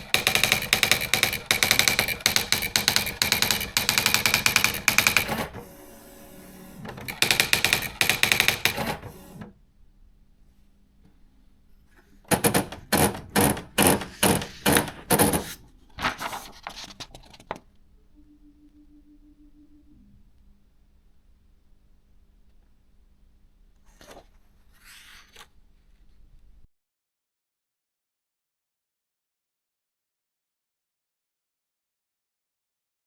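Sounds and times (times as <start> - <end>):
typewriter strikes: 0.0 - 5.6, 6.8 - 9.1, 12.3 - 15.5
faint hum: 17.7 - 23.8.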